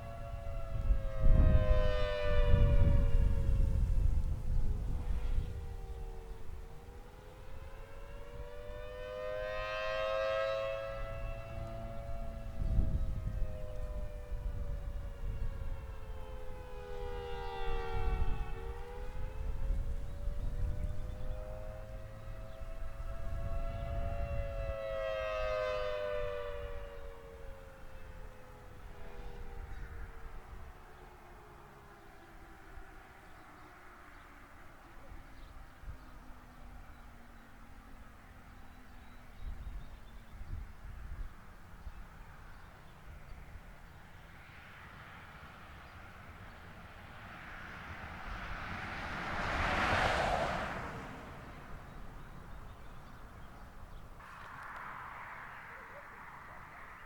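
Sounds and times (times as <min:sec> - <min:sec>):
warning siren sliding down in pitch: 0:00.0 - 0:42.1, 0:45.3 - 0:57.0
vehicle driving past: 0:44.2 - 0:57.0.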